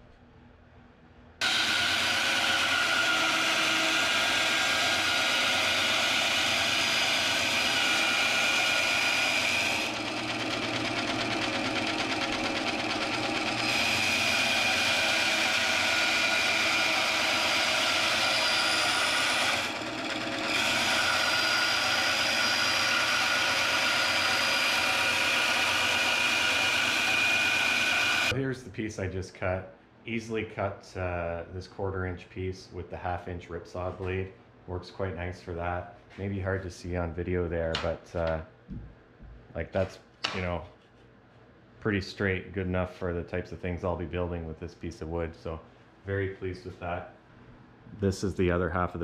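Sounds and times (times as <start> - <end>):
bandsaw cutting wood: 1.4 - 28.3.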